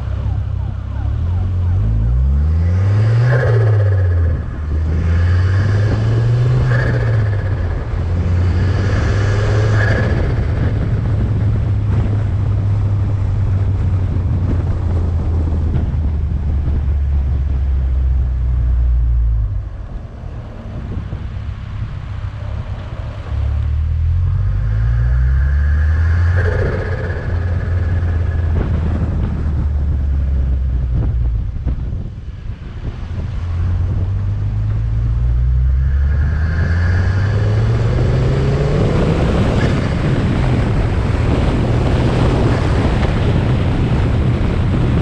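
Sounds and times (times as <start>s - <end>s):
car engine accelerating hard: 0.0s - 45.0s
turbo flutter: 24.2s - 31.8s.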